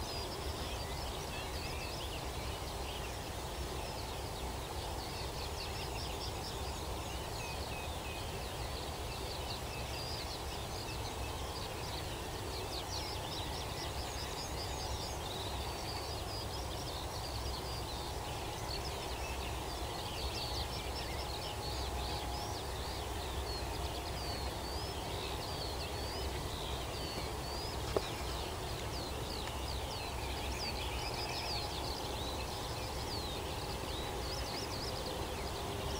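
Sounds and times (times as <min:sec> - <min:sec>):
songbirds chirping and trilling: 0:00.0 - 0:35.9.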